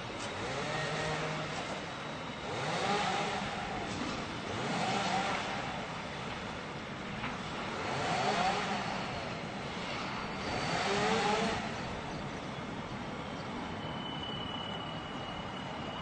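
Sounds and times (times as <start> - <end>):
city traffic hum: 0.0 - 16.0
chainsaw revving: 0.4 - 1.5, 2.4 - 3.6, 4.5 - 5.6, 7.7 - 9.0, 10.5 - 11.8
thin high whine: 13.6 - 16.0.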